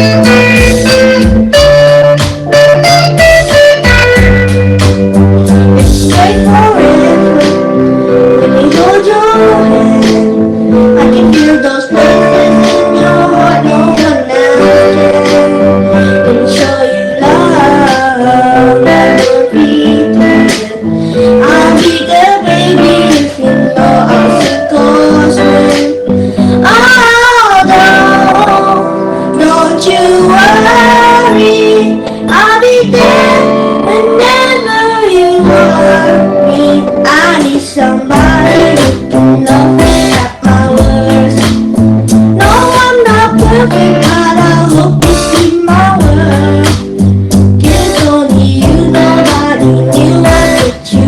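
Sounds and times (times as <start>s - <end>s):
guitar accompaniment: 0.0s - 51.0s
song with singing and instruments: 0.0s - 51.0s.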